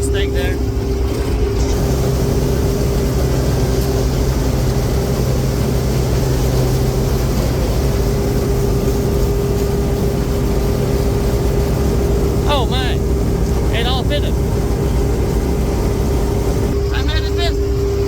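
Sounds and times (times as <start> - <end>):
combine harvester engine hum: 0.0 - 18.0
unloading auger whine: 1.0 - 12.5.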